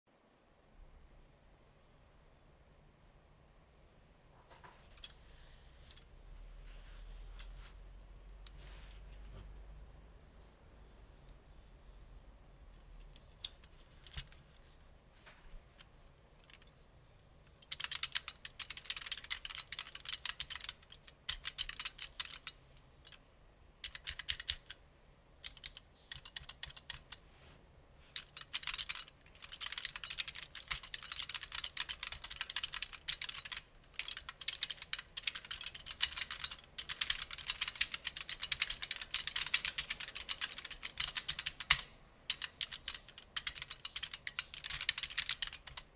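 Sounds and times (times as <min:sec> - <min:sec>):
keyboard typing clicks: 0:17.6 - 0:23.2, 0:23.8 - 0:24.8, 0:25.4 - 0:27.2, 0:28.2 - 0:45.9.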